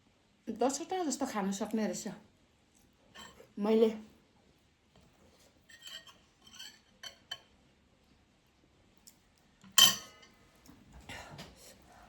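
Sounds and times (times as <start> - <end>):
cutlery clinking against a dish: 3.2 - 3.4, 5.7 - 7.6, 9.7 - 10.4.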